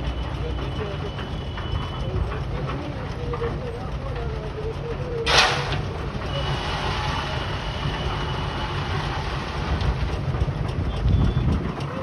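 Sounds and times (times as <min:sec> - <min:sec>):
pile-driving machinery rumble: 0:00.0 - 0:12.0
sharp impact: 0:05.3 - 0:06.0.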